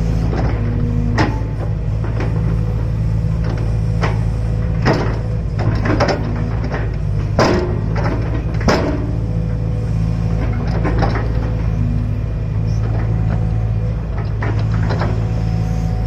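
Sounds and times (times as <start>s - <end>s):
excavator engine running: 0.0s - 16.0s.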